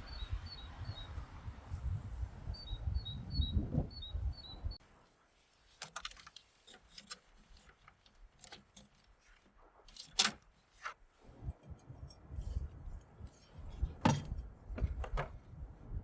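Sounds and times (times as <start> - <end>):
light clicks and knocks: 13.3 - 15.5.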